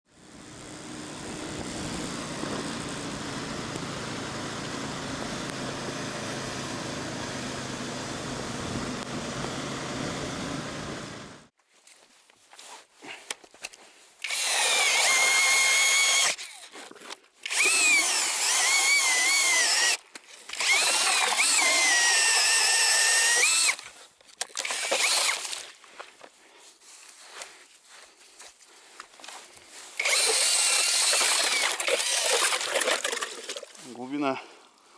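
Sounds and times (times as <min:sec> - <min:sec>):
power drill whining through ice: 0:00.2 - 0:11.5, 0:14.2 - 0:25.8, 0:29.8 - 0:34.2.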